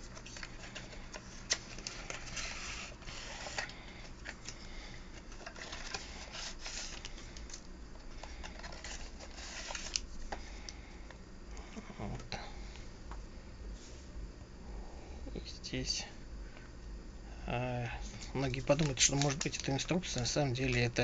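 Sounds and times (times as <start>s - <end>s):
cardboard and paper rustling: 5.2s - 7.6s, 8.2s - 10.3s, 18.3s - 20.9s.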